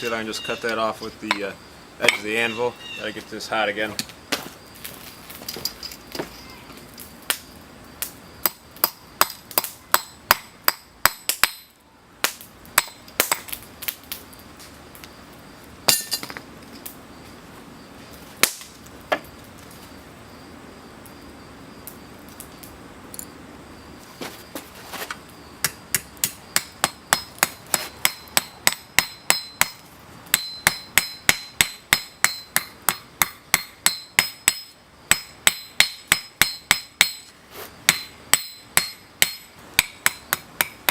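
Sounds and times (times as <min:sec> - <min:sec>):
hammer striking steel on anvil: 0:08.4 - 0:11.7, 0:12.8 - 0:13.4, 0:15.9 - 0:16.3, 0:25.6 - 0:37.3, 0:37.9 - 0:40.9.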